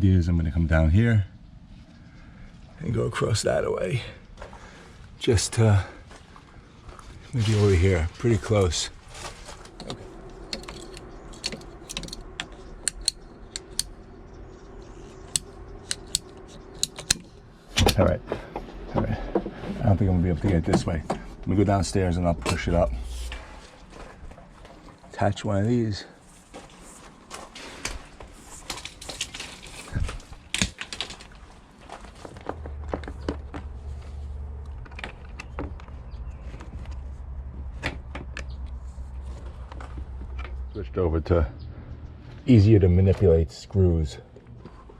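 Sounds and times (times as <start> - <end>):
steady low hum: 0.0 - 44.9
cable clicking and rattling: 9.2 - 14.1, 15.1 - 18.1, 27.8 - 40.6.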